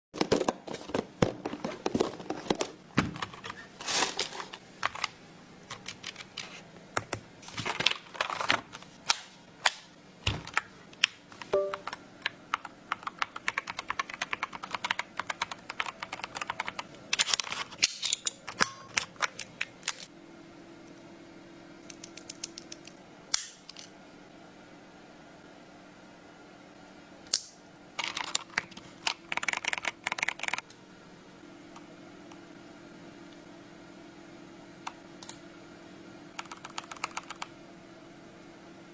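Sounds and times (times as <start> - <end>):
mechanical keyboard typing: 10.5 - 17.6, 21.9 - 23.0, 28.0 - 30.6, 36.3 - 37.5.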